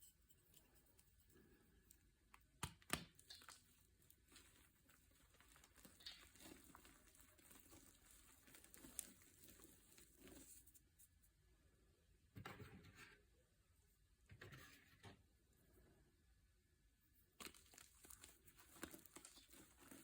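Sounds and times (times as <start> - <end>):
faint crinkling: 0.0 - 11.4, 17.0 - 20.0.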